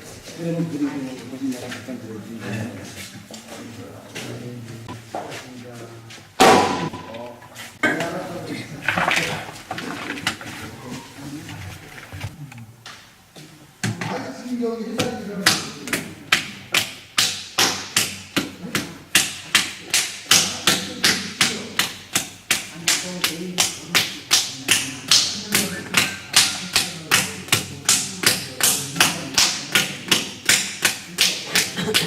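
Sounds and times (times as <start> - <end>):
clay being slapped: 6.4 - 7.3, 15.0 - 32.0.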